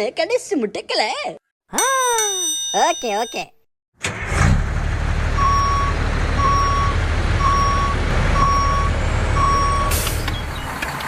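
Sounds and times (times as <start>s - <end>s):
engine rumbling: 4.0s - 11.0s
truck reversing alarm beeping: 5.2s - 10.6s.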